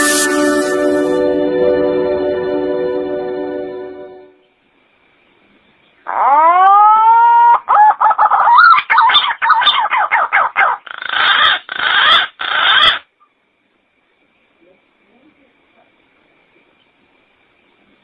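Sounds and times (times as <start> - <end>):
bird calling: 6.1 - 13.0.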